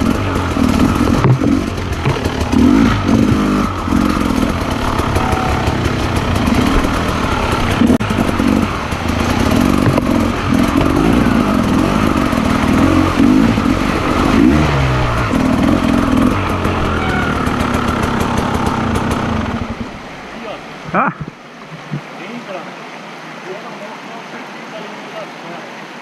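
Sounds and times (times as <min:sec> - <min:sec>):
motorcycle engine revving: 0:00.0 - 0:20.2.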